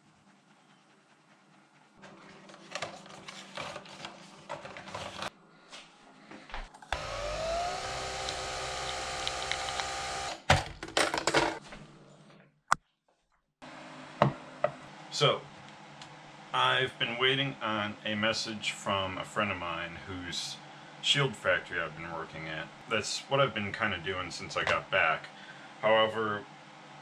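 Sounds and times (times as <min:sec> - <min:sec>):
small electric motor whine: 0:06.9 - 0:10.5.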